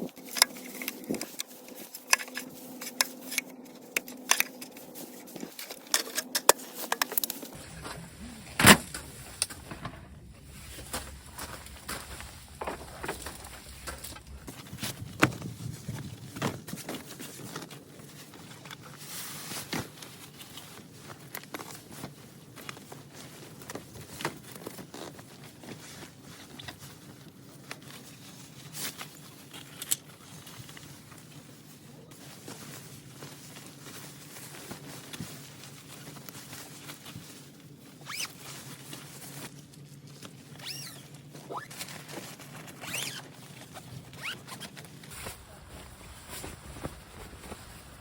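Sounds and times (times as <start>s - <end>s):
clicks and rustles of handling: 0.0s - 48.0s
low steady hum: 7.2s - 16.5s, 41.1s - 48.0s.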